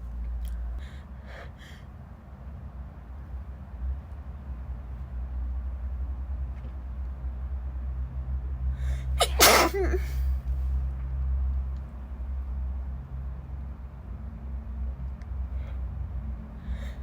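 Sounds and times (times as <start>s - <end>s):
woman sneezing: 9.2s - 10.2s.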